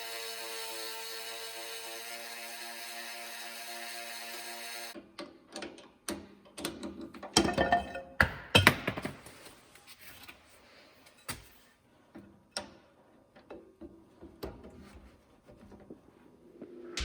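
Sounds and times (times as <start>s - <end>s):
metal tools knocking and clicking: 7.3s - 8.0s.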